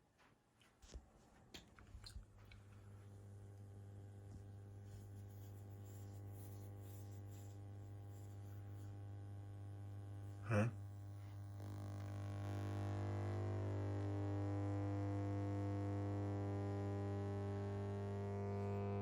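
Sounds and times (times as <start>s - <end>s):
amplifier mains hum: 2.4s - 6.3s, 8.4s - 19.0s.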